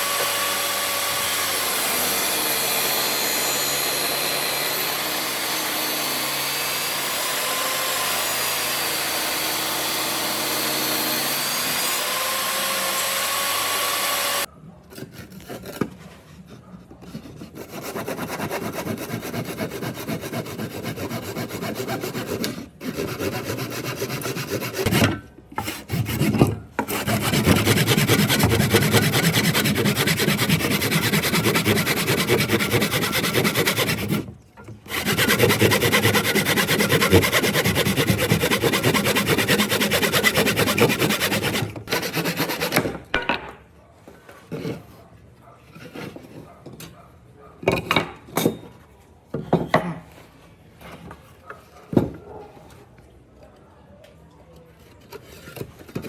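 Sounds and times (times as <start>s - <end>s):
rasping scrape on wood: 9.2s - 42.9s.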